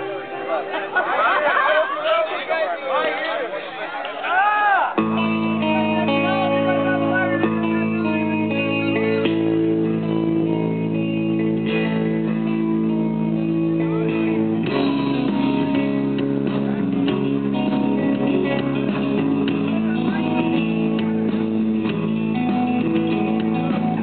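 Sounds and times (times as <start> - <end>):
bass: 5.0 - 24.0
guitar music: 5.0 - 24.0.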